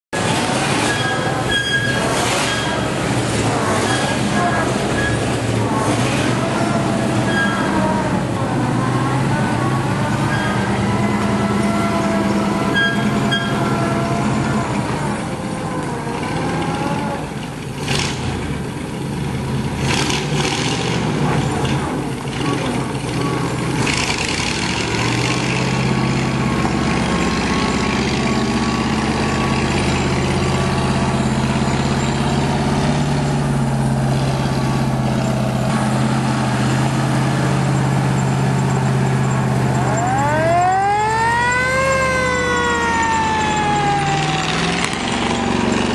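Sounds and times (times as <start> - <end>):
fire truck engine running: 0.1 - 45.9
siren winding up: 12.7 - 13.9, 39.2 - 45.9.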